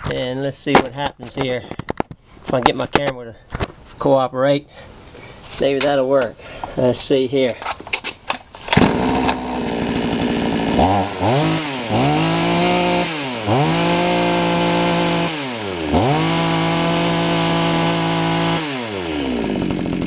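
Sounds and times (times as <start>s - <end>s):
chainsaw idling and revving: 8.7s - 20.0s.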